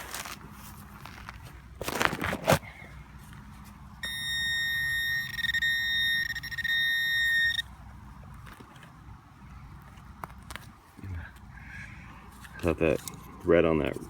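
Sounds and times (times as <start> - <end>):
metal detector buzzing high tone: 4.0 - 7.6.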